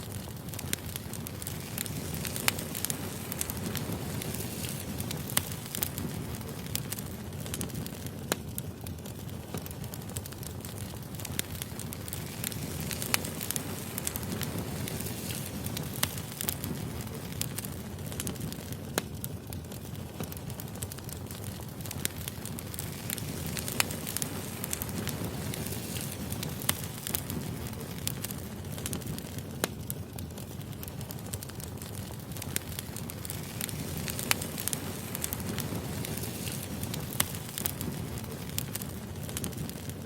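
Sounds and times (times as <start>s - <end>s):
fire flames rumbling: 0.0s - 40.0s
logs popping and crackling: 0.0s - 40.0s.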